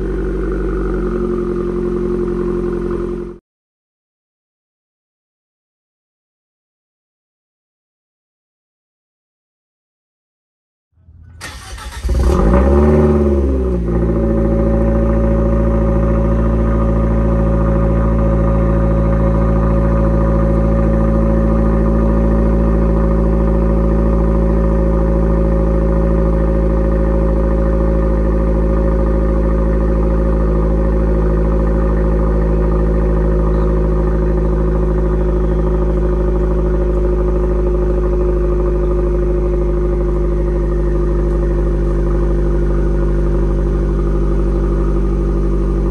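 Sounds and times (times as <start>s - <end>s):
car engine starting and idling: 0.0s - 3.4s, 11.0s - 45.9s.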